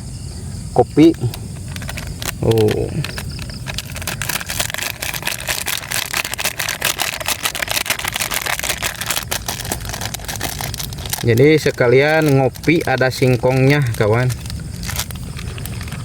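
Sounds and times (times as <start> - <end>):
cooking fire crackling and popping: 1.0 - 16.0.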